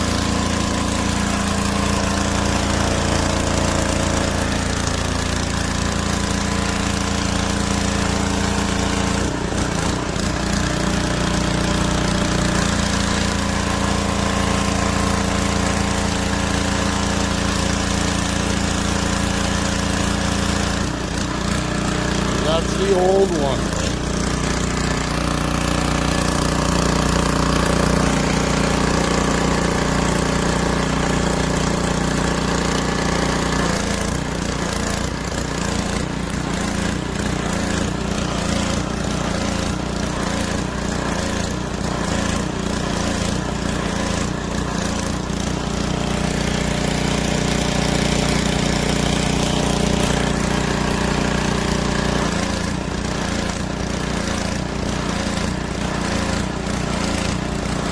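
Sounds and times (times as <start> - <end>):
small gas engine running: 0.0 - 57.9.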